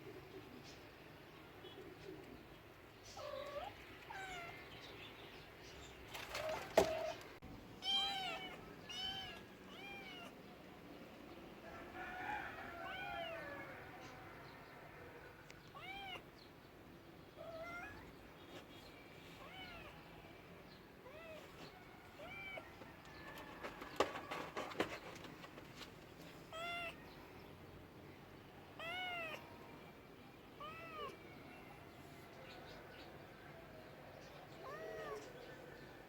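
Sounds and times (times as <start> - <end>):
cat meowing: 3.2 - 4.6, 7.8 - 10.4, 17.4 - 18.1, 19.4 - 20.0, 26.5 - 27.0, 28.8 - 29.4, 30.6 - 31.2, 34.6 - 35.3.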